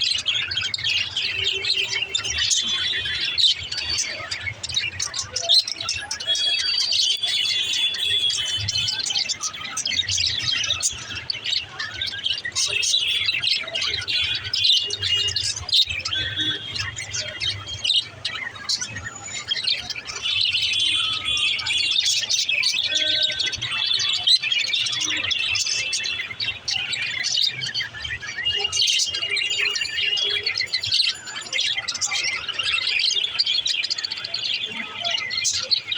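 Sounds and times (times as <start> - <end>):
budgerigars chirping and chattering: 0.0 - 35.9.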